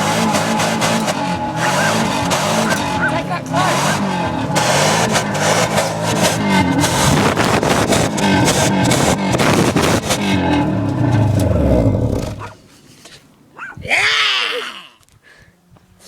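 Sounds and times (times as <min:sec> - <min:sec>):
car engine revving: 0:00.0 - 0:12.7.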